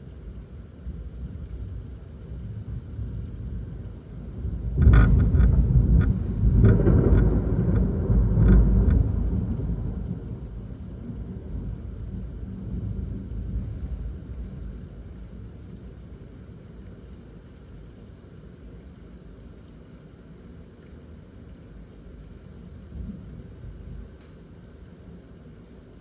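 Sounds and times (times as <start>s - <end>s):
thunder burst and rumble: 2.4s - 16.0s
thunder crackles: 2.4s - 16.0s.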